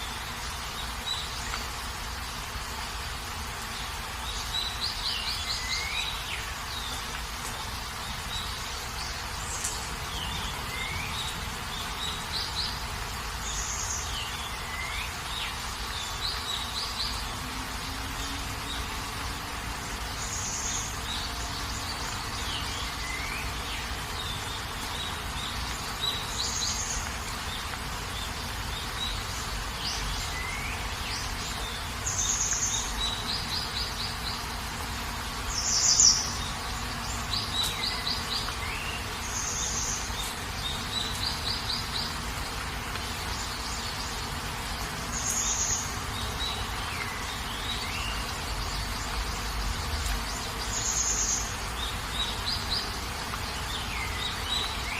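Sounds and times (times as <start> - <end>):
birds chirping and trilling: 0.0 - 54.9
steady hiss: 0.0 - 54.9.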